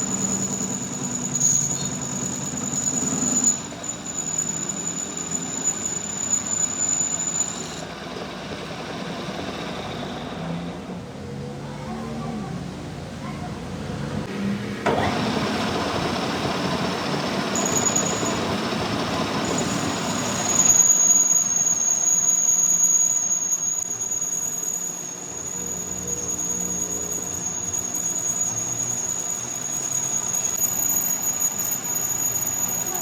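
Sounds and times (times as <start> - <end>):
metalworking machine squealing: 0.0 - 10.8, 14.9 - 33.0.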